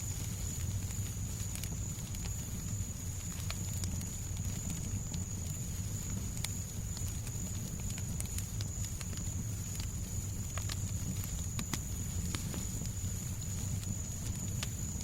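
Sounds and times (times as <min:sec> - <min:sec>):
fireplace crackling: 0:00.0 - 0:15.0
low rumble of fire: 0:00.0 - 0:15.0
sharp pops and snaps: 0:05.9 - 0:15.0.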